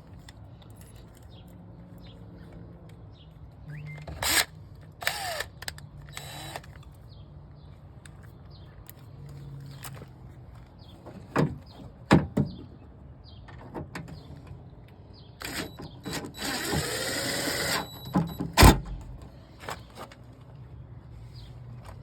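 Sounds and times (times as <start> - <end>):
drill motor whine: 15.4 - 18.0.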